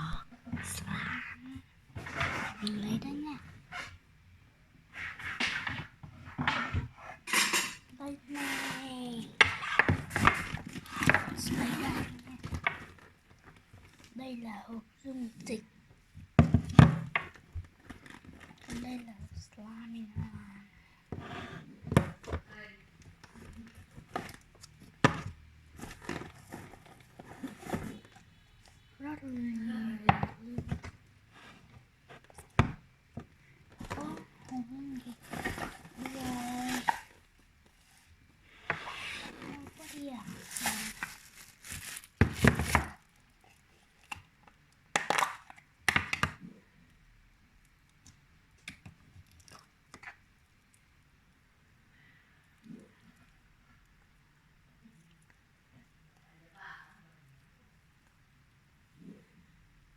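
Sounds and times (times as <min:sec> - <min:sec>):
hands handling slime: 0:38.7 - 0:46.4.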